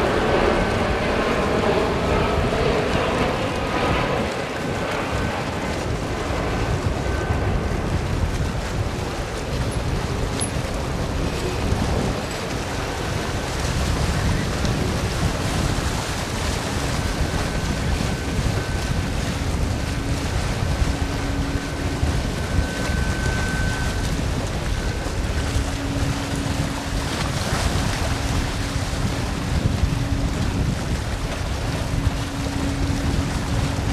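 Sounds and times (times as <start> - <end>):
faint high whine: 0.0 - 33.9
steady low rumble: 0.0 - 33.9
wind buffeting microphone: 0.0 - 33.9.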